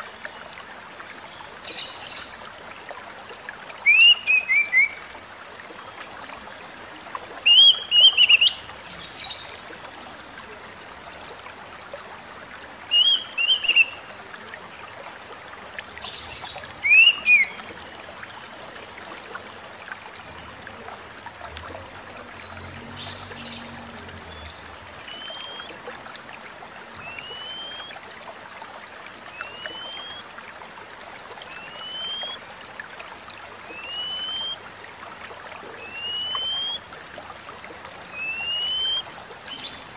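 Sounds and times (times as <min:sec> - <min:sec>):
bird whistling calls: 0:03.8 - 0:05.0, 0:07.5 - 0:08.6, 0:12.9 - 0:14.0, 0:16.8 - 0:17.6, 0:25.1 - 0:25.7, 0:27.0 - 0:28.0, 0:29.4 - 0:30.2, 0:31.6 - 0:32.4, 0:33.7 - 0:34.6, 0:35.9 - 0:36.8, 0:38.2 - 0:39.1.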